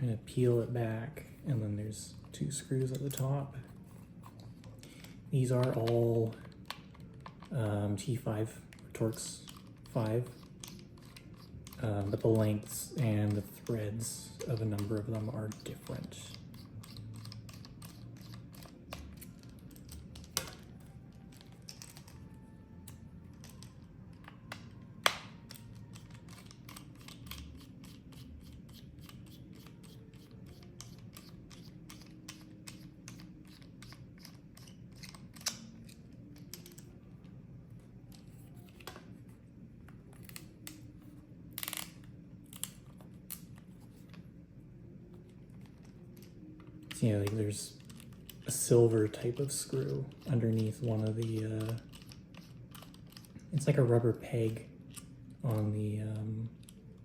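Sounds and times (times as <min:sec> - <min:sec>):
screwdriver and plastic parts clicking: 0:08.7 - 0:37.0, 0:45.6 - 0:53.7.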